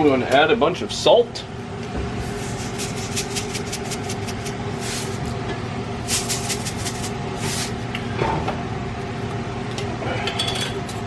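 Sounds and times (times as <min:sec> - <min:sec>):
low kitchen hum: 0:00.0 - 0:11.0
salt shaken into a pot: 0:02.4 - 0:05.2, 0:06.0 - 0:07.8.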